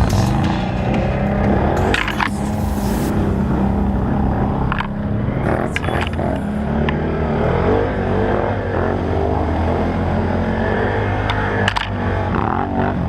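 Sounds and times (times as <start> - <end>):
atv engines running: 0.0 - 13.0
sharp clicks: 1.8 - 3.1.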